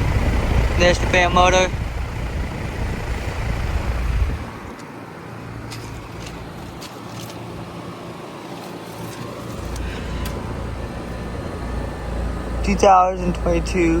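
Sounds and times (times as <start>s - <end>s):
deep low rumble: 0.0s - 4.7s
compressor humming: 0.0s - 14.0s
fan air rush: 0.0s - 14.0s.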